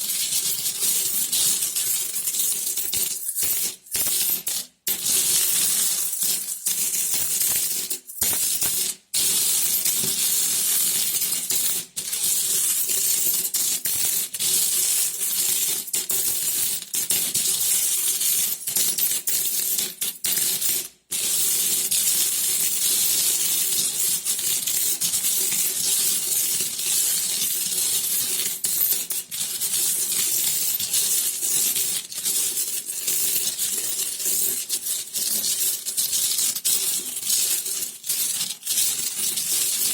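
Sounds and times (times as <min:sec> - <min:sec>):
coins clinking: 0:02.8 - 0:04.4.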